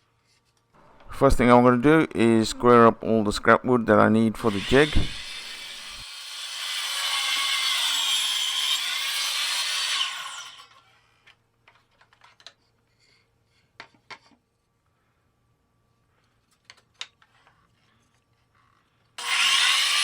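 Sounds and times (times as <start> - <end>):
woodworking power tool cutting: 4.4 - 10.8, 19.2 - 20.0.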